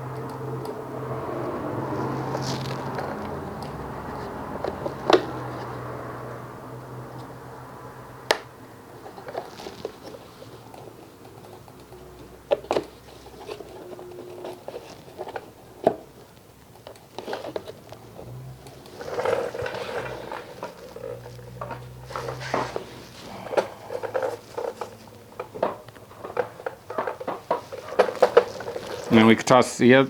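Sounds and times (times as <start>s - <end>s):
rustling and scraping: 0.0s - 30.0s.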